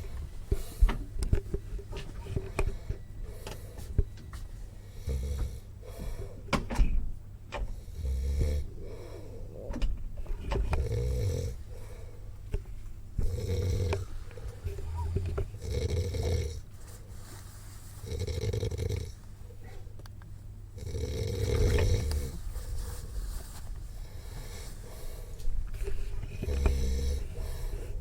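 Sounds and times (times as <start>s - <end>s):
person snoring: 4.9s - 5.7s, 7.8s - 9.3s, 10.8s - 11.6s, 13.2s - 16.6s, 18.0s - 19.2s, 20.8s - 22.4s, 26.3s - 28.0s.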